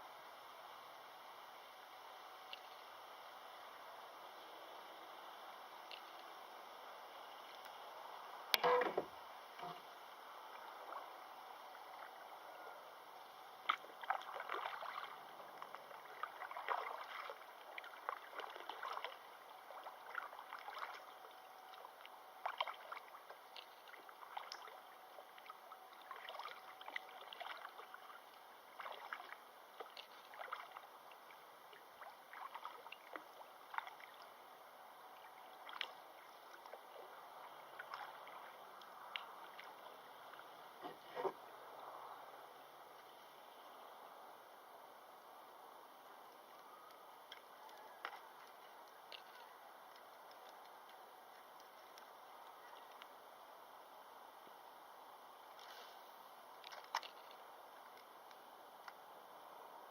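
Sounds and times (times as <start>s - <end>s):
water splashing and gurgling: 8.6s - 12.4s, 13.1s - 42.0s, 56.4s - 59.4s.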